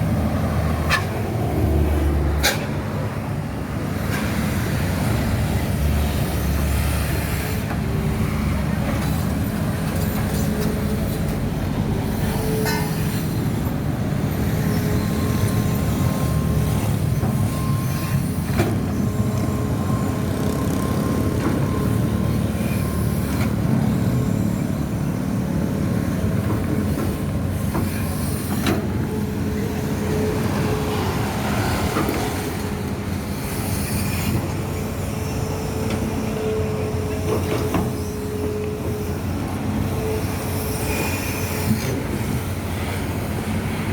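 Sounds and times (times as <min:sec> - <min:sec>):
diesel construction machinery running: 0:00.0 - 0:43.9
metallic squeal: 0:14.5 - 0:20.2.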